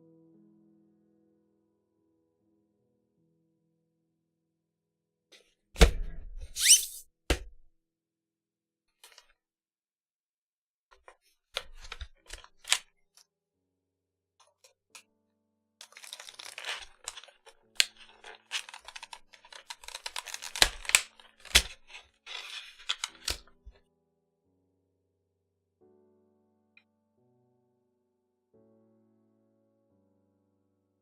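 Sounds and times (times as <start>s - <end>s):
quiet piano music: 0.0s - 3.6s, 25.8s - 31.0s
keyboard parts clicking and knocking: 11.6s - 12.8s, 15.8s - 23.7s
scraping and rustling: 15.8s - 23.5s.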